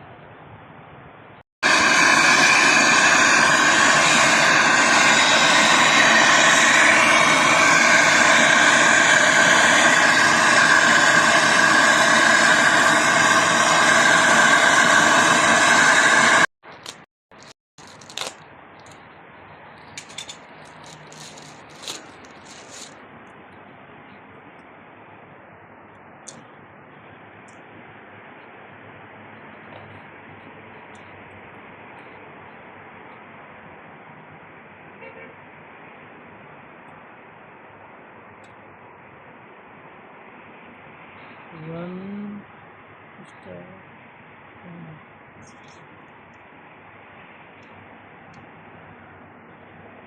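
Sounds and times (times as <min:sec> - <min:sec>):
loud steady machine noise: 0:01.6 - 0:18.1.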